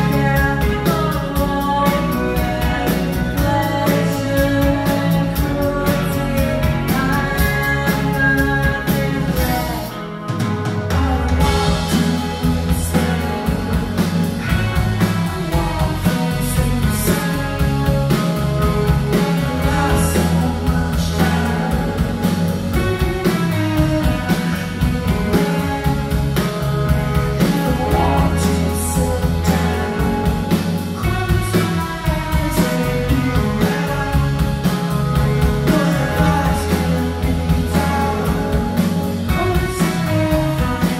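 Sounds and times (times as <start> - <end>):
rock band playing: 0.0 - 40.9.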